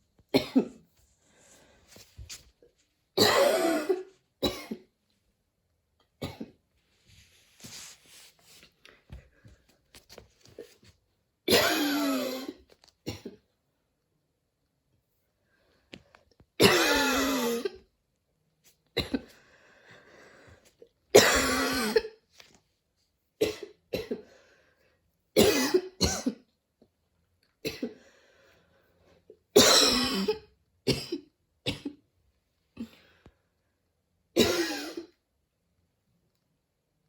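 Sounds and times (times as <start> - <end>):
girl coughing with wheeze: 0.3 - 0.8, 3.2 - 4.9, 11.5 - 13.4, 16.6 - 17.8, 21.1 - 22.2, 23.4 - 24.3, 25.4 - 26.5, 29.6 - 32.0, 34.4 - 35.2
breathing: 1.1 - 2.0, 19.2 - 20.8, 24.2 - 25.0, 28.0 - 29.2, 32.8 - 33.7.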